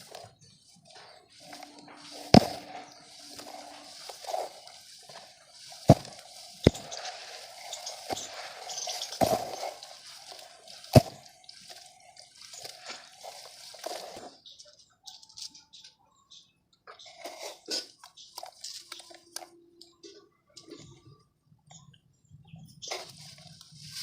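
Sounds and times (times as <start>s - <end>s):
dry mud crumbling into water: 1.0s - 14.3s.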